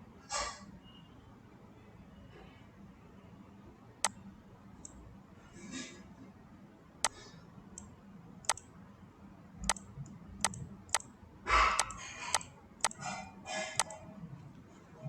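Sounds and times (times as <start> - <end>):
computer mouse clicking: 7.8 - 8.7, 9.6 - 11.1, 11.8 - 13.1, 13.8 - 14.0.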